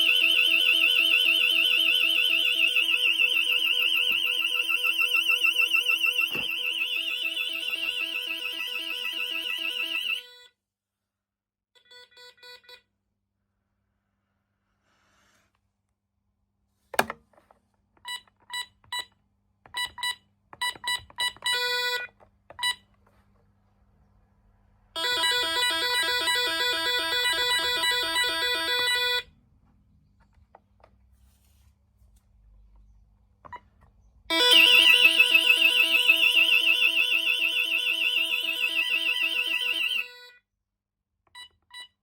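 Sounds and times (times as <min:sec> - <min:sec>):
loud warbling alarm tone: 0:00.0 - 0:10.2, 0:34.3 - 0:40.2.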